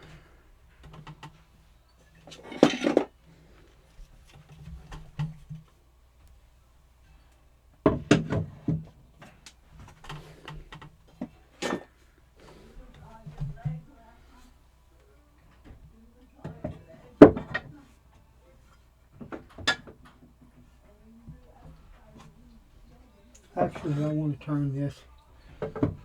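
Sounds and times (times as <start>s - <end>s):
wooden parts clattering: 2.2s - 3.2s.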